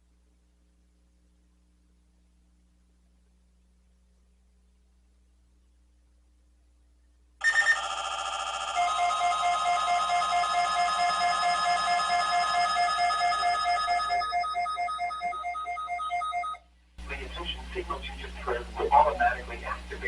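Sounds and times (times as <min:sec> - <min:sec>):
electronic alert tones: 0:08.8 - 0:16.6.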